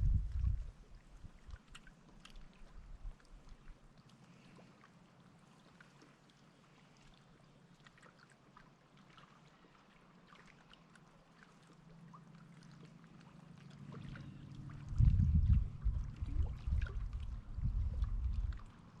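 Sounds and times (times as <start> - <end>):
low rumbling and thumping: 0.0 - 0.7, 14.8 - 18.6
small drips and ticks: 0.0 - 19.0
water lapping and trickling: 0.0 - 19.0.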